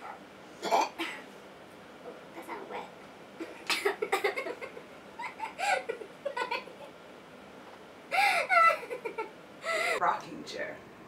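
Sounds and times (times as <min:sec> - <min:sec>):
women giggling and laughing: 0:03.4 - 0:06.9.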